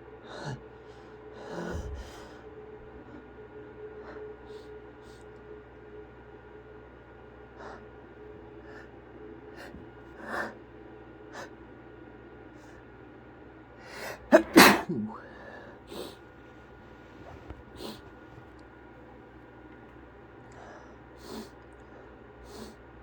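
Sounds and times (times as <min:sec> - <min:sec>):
man sniffling: 0:13.9 - 0:16.2, 0:17.1 - 0:18.2, 0:20.8 - 0:21.6, 0:22.4 - 0:22.8
quick catching breaths: 0:13.9 - 0:18.5
man sneezing loudly: 0:14.1 - 0:15.2.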